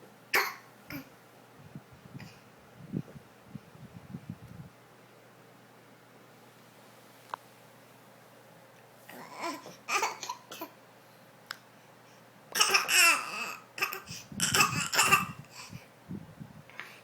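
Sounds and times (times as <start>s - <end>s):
baby coughing: 0.3s - 1.1s, 9.1s - 10.8s, 12.5s - 15.5s
baby fake laughing: 12.6s - 15.4s.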